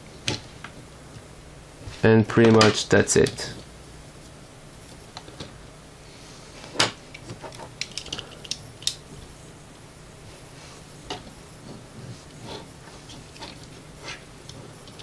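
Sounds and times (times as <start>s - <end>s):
toy parts clicking and knocking: 7.1s - 9.0s.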